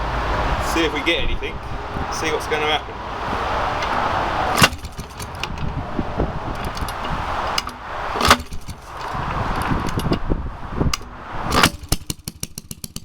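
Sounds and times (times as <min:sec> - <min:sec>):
engine kick-start whir: 0:03.6 - 0:10.2, 0:10.9 - 0:13.0
sharp engine knock: 0:10.9 - 0:13.0.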